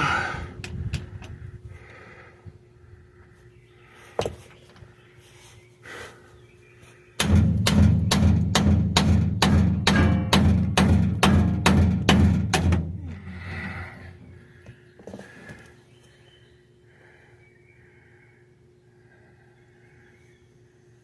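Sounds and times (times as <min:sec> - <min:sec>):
hammer striking metal: 0:07.2 - 0:13.0.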